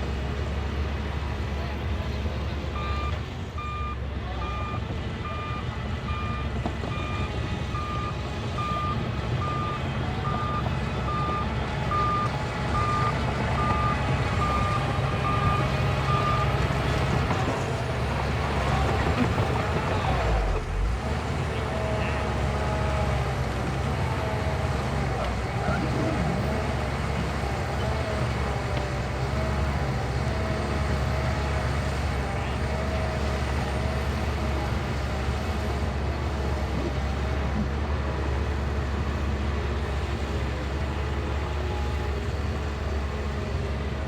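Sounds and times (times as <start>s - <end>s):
diesel engine rumble: 0.0s - 44.0s
reversing alarm beeping: 2.8s - 17.3s.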